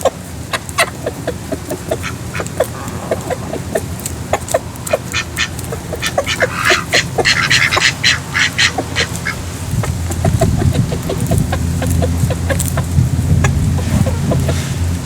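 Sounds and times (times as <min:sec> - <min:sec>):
ducks quacking: 0:00.0 - 0:15.0.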